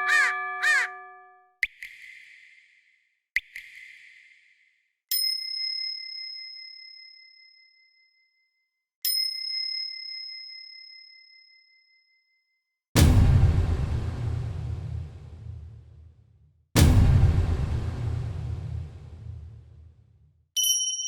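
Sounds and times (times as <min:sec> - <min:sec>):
small bell ringing: 0:00.0 - 0:01.4, 0:09.1 - 0:12.4, 0:20.6 - 0:21.0.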